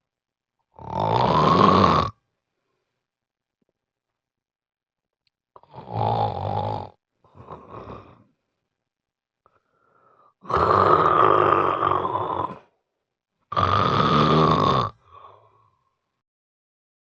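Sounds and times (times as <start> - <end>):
person snoring heavily: 0.8 - 2.2, 5.6 - 8.3, 10.3 - 12.7, 13.5 - 15.6
faint breath: 9.4 - 10.4, 15.0 - 16.1.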